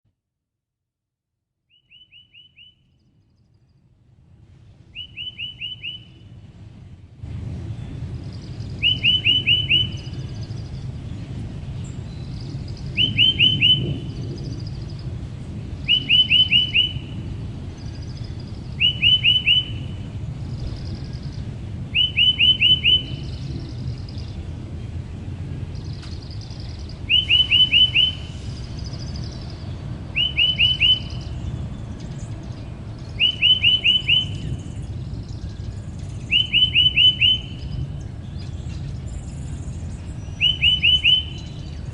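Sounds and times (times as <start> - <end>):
low background rumble: 3.0 - 41.9
songbird phrase: 11.9 - 15.2, 15.9 - 24.5, 25.8 - 41.9.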